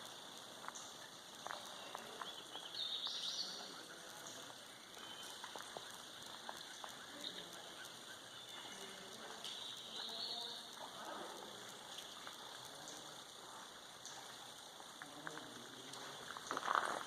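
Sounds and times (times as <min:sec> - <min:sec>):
light ticks and pops: 0:00.0 - 0:17.0
soft woodland hiss: 0:00.0 - 0:17.0
high chirping call: 0:01.7 - 0:04.0, 0:04.7 - 0:10.7.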